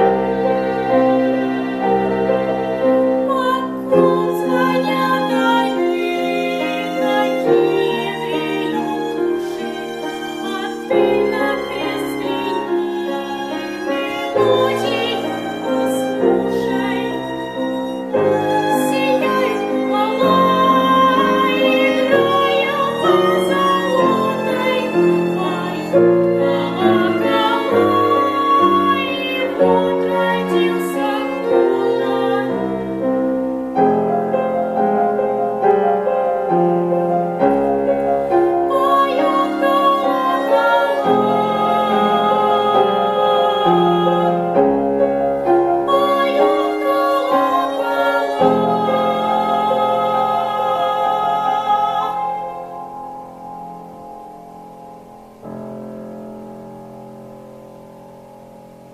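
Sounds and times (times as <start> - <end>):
bowed strings: 0.0 - 58.9
piano: 0.0 - 58.9.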